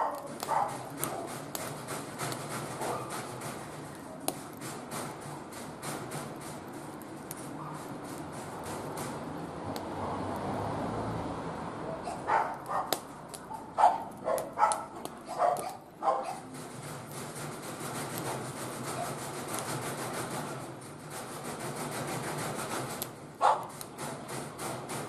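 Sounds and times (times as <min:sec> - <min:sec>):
dog barks: 0:00.0 - 0:01.3, 0:02.8 - 0:03.1, 0:12.0 - 0:16.5, 0:23.4 - 0:23.7
wood fire crackling and popping: 0:00.0 - 0:11.2, 0:12.2 - 0:25.0.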